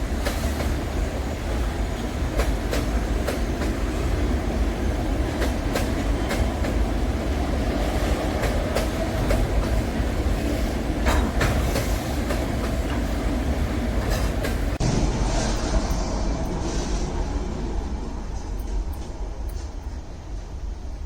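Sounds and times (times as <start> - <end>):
wheels clicking over rail joints: 0.0 - 14.8
freight train rumbling: 0.0 - 21.0.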